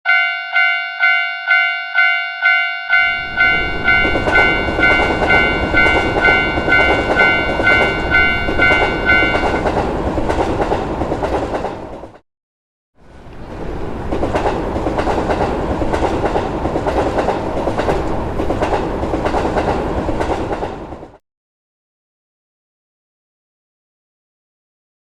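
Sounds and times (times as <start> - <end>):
railroad crossing bell ringing: 0.0 - 9.7
train wheels clacking over rail joints: 3.2 - 12.2, 13.4 - 21.2.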